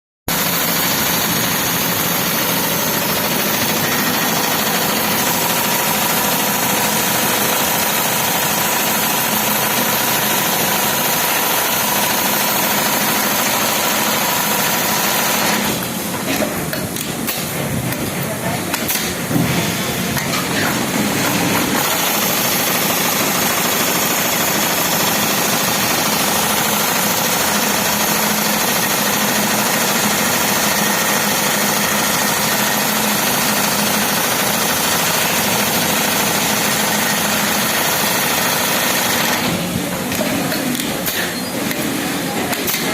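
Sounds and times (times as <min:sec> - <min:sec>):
sewing machine clattering: 0:00.3 - 0:42.9.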